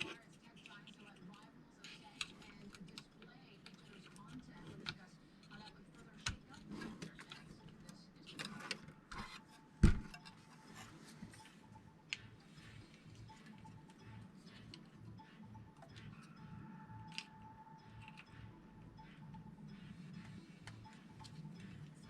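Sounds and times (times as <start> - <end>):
small parts and tools clicking: 0.0 - 22.0
faint steady tone: 6.8 - 22.0.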